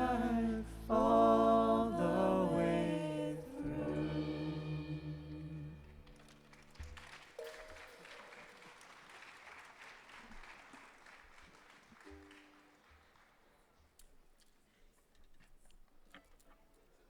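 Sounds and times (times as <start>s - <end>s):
audience applause: 6.0s - 13.7s.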